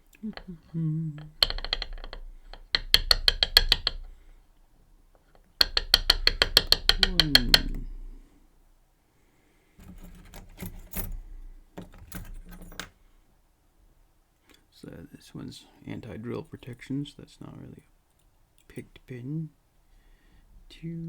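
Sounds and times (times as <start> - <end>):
metal lock parts clicking: 0.0 - 4.2, 5.2 - 8.0, 9.8 - 13.0
knocks: 0.2 - 4.2, 5.4 - 8.2.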